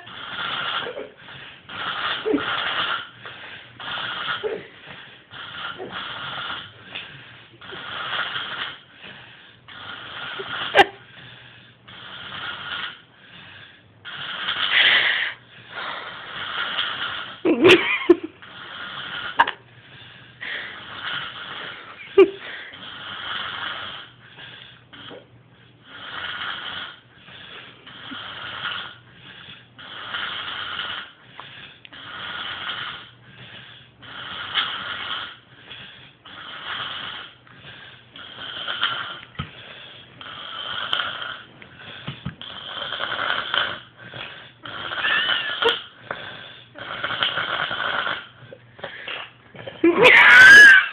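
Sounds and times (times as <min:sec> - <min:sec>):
woman snoring: 0:42.4 - 0:46.0.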